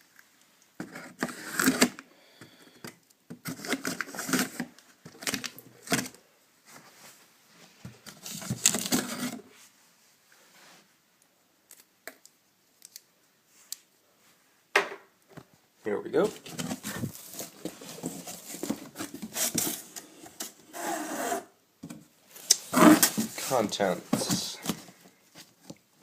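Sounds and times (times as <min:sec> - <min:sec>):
packing scraping and tearing: 0:16.4 - 0:21.4, 0:22.4 - 0:23.6
knife cutting cardboard box: 0:16.5 - 0:21.5, 0:22.6 - 0:23.4.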